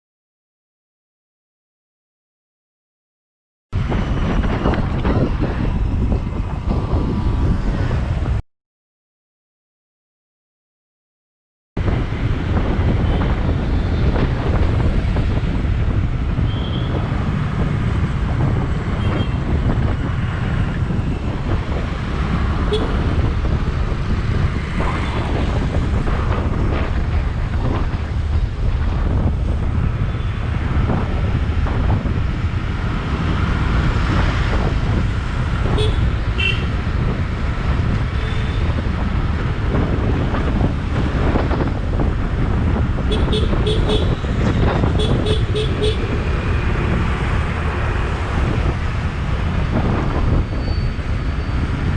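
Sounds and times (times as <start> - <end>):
surrounding traffic: 3.8 - 8.4, 11.8 - 51.9
wind buffeting microphone: 3.8 - 8.4, 11.8 - 51.9
motorbike engine hum: 12.1 - 51.9.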